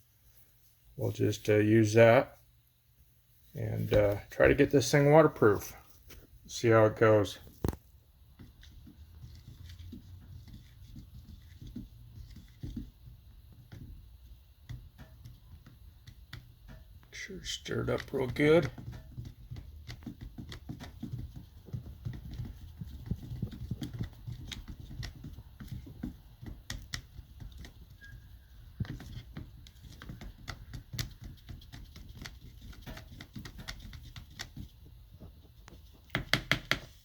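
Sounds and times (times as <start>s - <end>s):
stirrer knocking against bowl: 17.8s - 37.0s.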